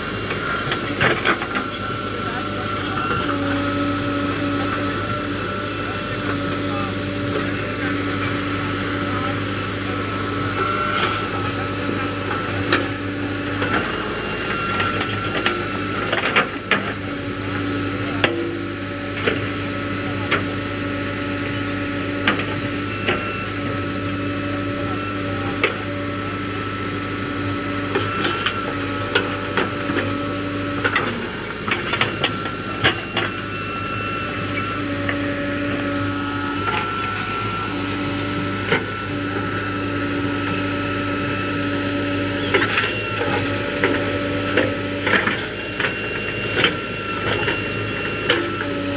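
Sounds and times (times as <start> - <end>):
metallic clanks and knocks: 0.0 - 21.2, 27.5 - 33.4, 39.8 - 48.9
backhoe engine running: 0.0 - 48.9
hydraulics whining: 0.0 - 48.9
steady high hiss: 0.0 - 48.9.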